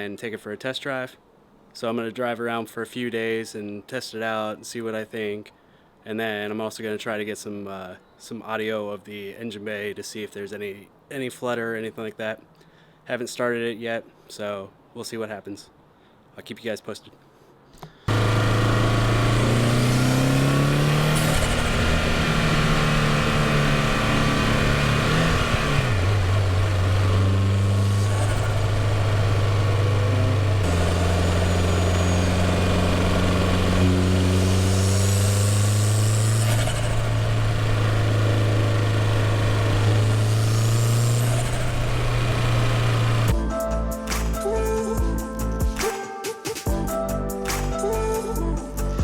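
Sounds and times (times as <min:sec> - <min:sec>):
car engine accelerating: 0:18.1 - 0:43.4
music: 0:43.3 - 0:49.0.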